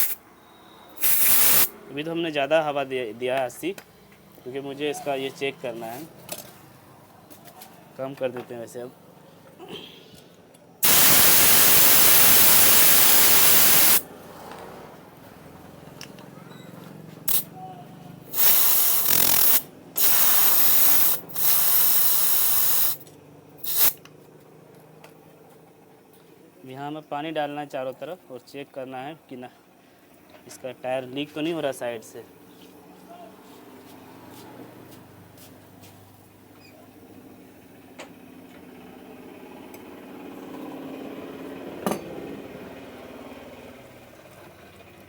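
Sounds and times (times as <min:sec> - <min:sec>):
air hissing from tyre valve: 0:00.0 - 0:01.8, 0:10.8 - 0:14.0, 0:17.3 - 0:17.5, 0:18.3 - 0:23.0, 0:23.6 - 0:24.0.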